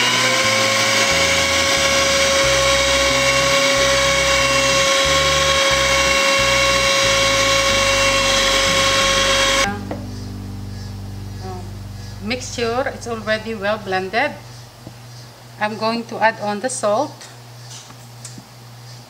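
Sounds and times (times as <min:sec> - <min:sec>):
electric mixer whining: 0:00.0 - 0:09.7.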